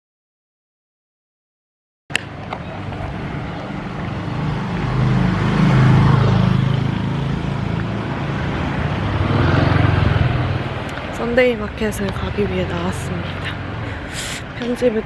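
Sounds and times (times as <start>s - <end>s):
road noise: 2.1s - 15.0s.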